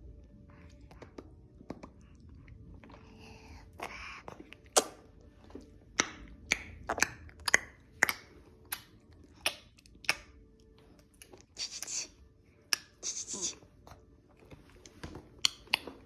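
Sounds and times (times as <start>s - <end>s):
baby mouth clicks and smacks: 6.0s - 10.4s, 14.8s - 16.0s
breathy hiss: 12.9s - 13.8s.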